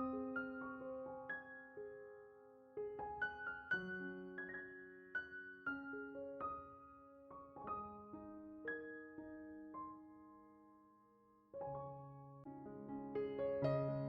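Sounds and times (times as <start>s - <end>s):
soft solo piano: 0.0s - 14.0s.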